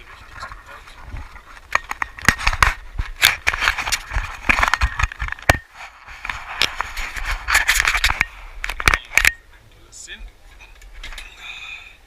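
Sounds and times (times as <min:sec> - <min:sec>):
scraping and rustling: 0:00.0 - 0:09.2.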